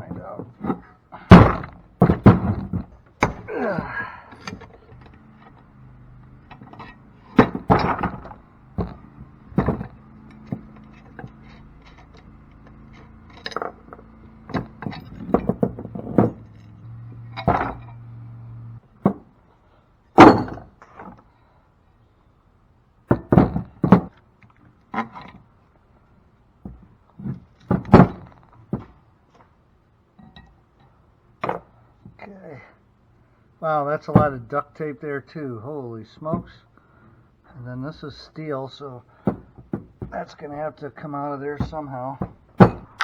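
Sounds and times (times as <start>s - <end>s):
metal tools and parts clanking: 0.0s - 18.8s, 20.2s - 21.2s
faint low hum: 0.0s - 43.0s.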